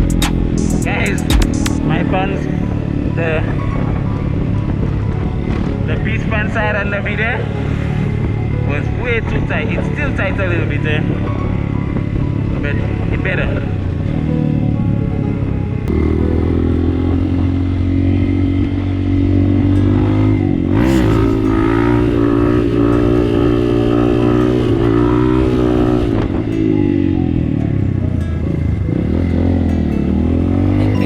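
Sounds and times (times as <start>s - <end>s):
motorcycle engine running: 0.0s - 31.0s.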